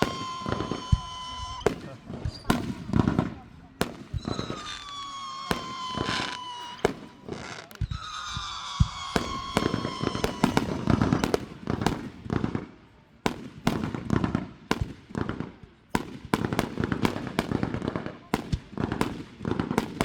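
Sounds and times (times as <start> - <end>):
whistling firework: 0.0 - 12.6
firework bangs and pops: 0.0 - 20.0.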